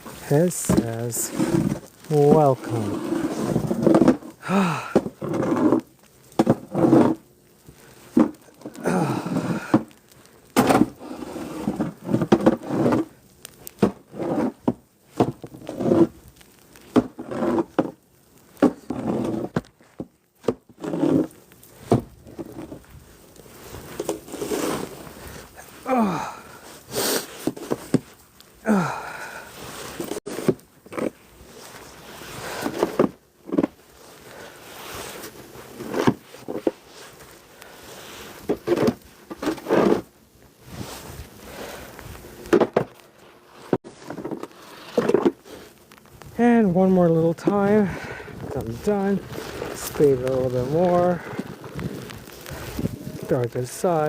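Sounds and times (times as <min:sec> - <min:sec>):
snow shovel scraping: 0:00.0 - 0:07.2, 0:08.0 - 0:18.0, 0:18.6 - 0:45.8, 0:46.4 - 0:54.0
short voiced exhalations: 0:04.4 - 0:05.0, 0:08.8 - 0:09.8, 0:25.6 - 0:26.6, 0:28.6 - 0:29.5
heavy breathing: 0:04.4 - 0:05.2, 0:08.7 - 0:10.0, 0:25.2 - 0:27.5, 0:28.6 - 0:30.2, 0:41.4 - 0:42.2, 0:47.8 - 0:48.6.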